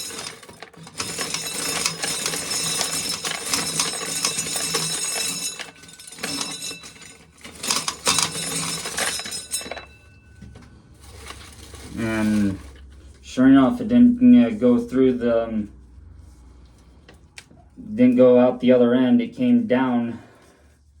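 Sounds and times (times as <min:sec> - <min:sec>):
corn sheller rattling: 0:00.0 - 0:10.1, 0:11.0 - 0:12.9
kernels clinking: 0:00.0 - 0:12.8.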